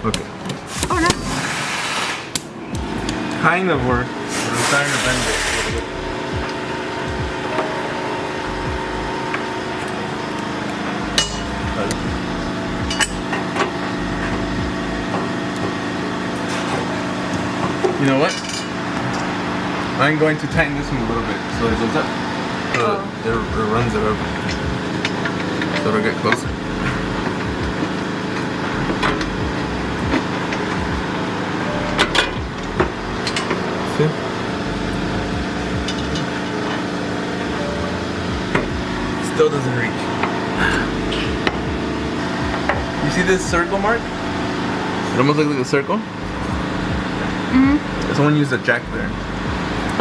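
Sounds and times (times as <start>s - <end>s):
steady mechanical hum: 0.0s - 50.0s
metal tools clinking: 11.2s - 12.0s, 17.8s - 19.3s, 33.2s - 33.8s.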